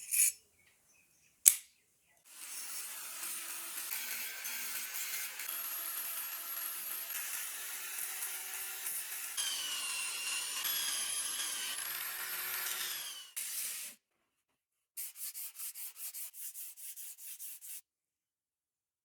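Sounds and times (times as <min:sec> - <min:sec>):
power tool whining on metal: 0:02.3 - 0:13.4.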